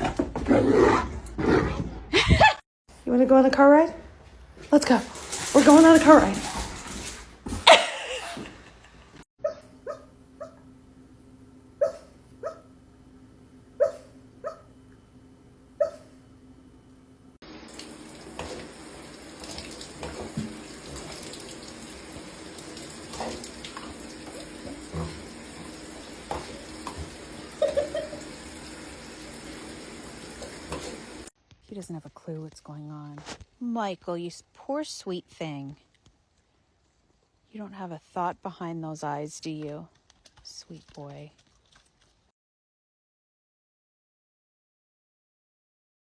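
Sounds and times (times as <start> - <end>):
dog yelping: 9.4 - 10.6, 11.8 - 12.7, 13.8 - 14.7, 15.8 - 16.1.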